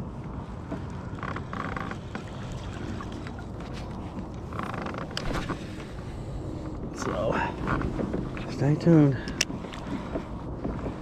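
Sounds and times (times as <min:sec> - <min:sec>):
kayak creaks and knocks: 0:00.6 - 0:06.0, 0:07.6 - 0:08.5, 0:09.3 - 0:11.0.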